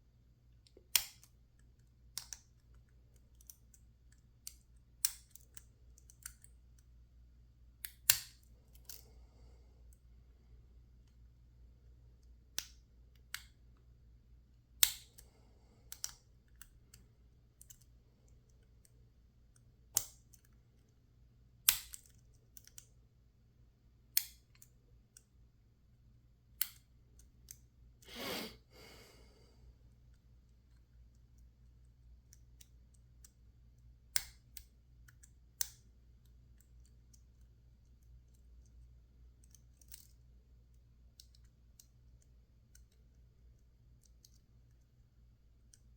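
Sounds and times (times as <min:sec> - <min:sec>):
faint low hum: 0:00.0 - 0:45.9
lock picks clicking in padlock: 0:21.6 - 0:22.9.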